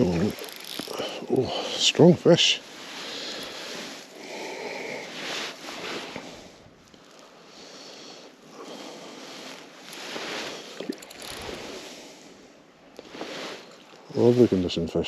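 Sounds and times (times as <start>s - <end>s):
water sloshing and splashing: 9.2s - 11.9s.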